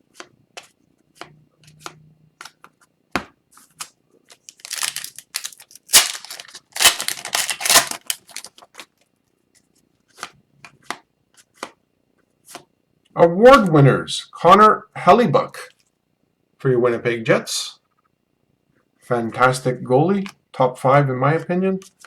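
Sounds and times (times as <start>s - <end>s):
cards clicking and sliding: 3.6s - 8.6s
foil card pack tearing: 4.5s - 8.6s.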